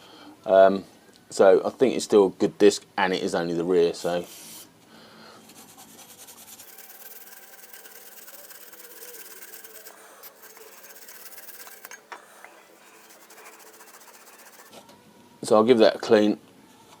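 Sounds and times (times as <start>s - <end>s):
rubbing on brake disc: 6.6s - 14.8s.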